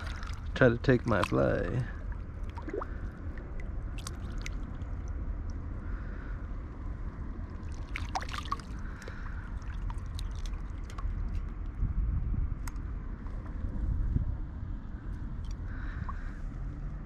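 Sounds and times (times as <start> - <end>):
water splashing: 0.0 - 5.7, 7.4 - 11.5
river water running: 0.0 - 6.3, 7.3 - 11.5.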